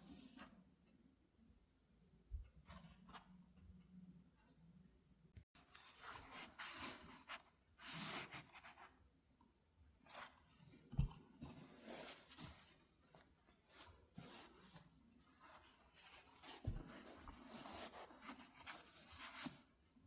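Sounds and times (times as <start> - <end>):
needle and thread through fabric: 10.0 - 19.8.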